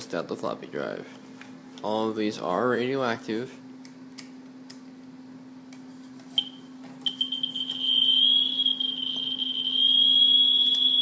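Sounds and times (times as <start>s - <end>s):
geiger counter beeping: 6.4s - 11.0s.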